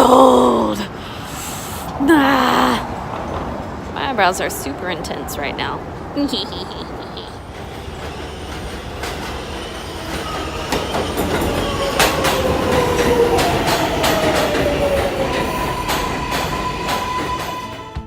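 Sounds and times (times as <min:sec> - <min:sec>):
train rumbling past: 0:00.0 - 0:18.0
wheels squealing: 0:06.1 - 0:18.0
sharp clacks of train wheels: 0:06.9 - 0:18.0.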